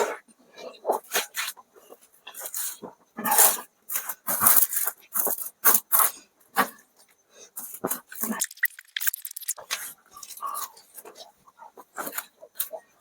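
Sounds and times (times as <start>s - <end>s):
chewing and smacking mouth noises: 8.2s - 12.8s.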